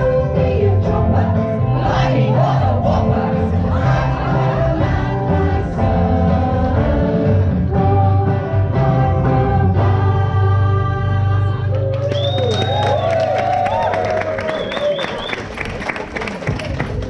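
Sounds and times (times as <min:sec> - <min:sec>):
voices singing: 0:00.0 - 0:11.7
bass line: 0:00.0 - 0:14.5.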